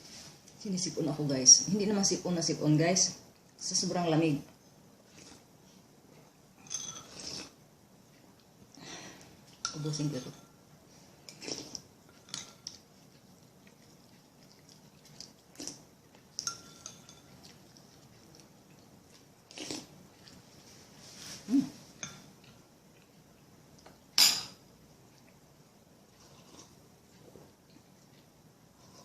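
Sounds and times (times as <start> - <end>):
cutlery clinking on a dish: 6.6 - 7.2, 16.4 - 17.4, 24.2 - 24.6.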